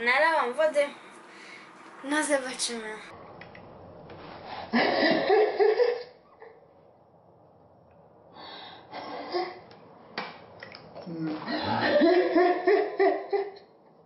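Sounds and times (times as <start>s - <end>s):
soft breathy noises: 1.0s - 1.9s.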